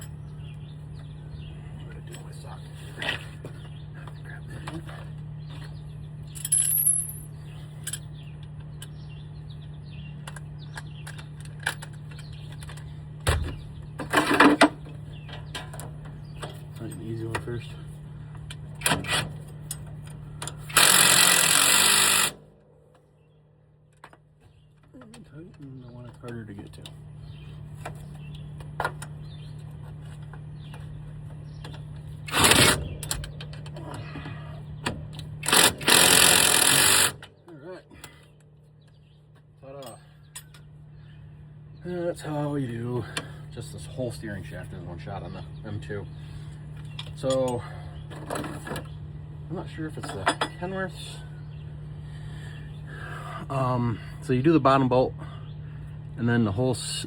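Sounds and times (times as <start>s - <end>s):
steady low hum: 0.0s - 57.0s
power tool spinning socket: 20.6s - 22.3s, 35.4s - 37.2s.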